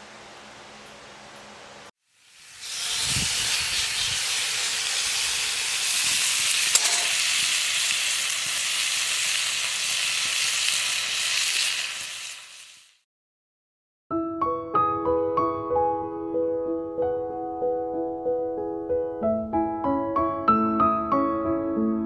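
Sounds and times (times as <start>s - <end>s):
wood fire hissing and sizzling: 2.0s - 13.0s.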